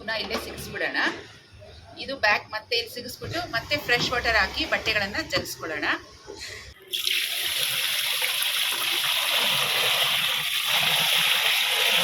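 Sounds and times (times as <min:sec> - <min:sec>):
water pouring into washing machine tub: 0:06.8 - 0:12.0.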